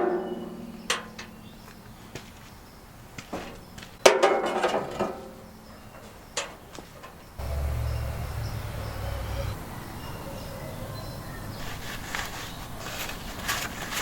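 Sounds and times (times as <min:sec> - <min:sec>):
ringing metallic clank: 0:00.0 - 0:01.5
steady low rumble: 0:07.4 - 0:09.8.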